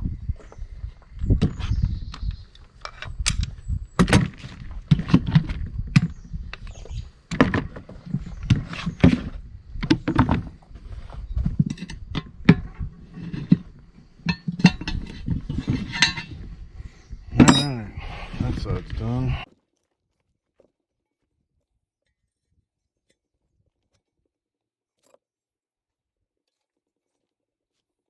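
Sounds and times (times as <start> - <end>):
metal tools clanking on rim: 11.4 - 16.6, 17.3 - 19.4.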